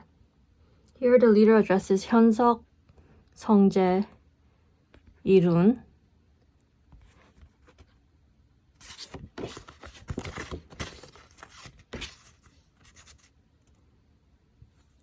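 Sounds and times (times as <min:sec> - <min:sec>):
photo cards scraping and clicking: 0:08.8 - 0:13.3.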